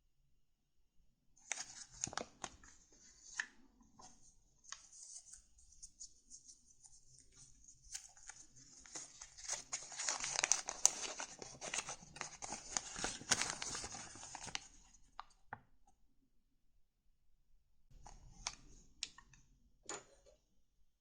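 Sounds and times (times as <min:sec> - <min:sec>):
paper crinkling and rustling: 0:01.4 - 0:04.1, 0:07.3 - 0:14.8
crisp crackles: 0:08.2 - 0:14.7.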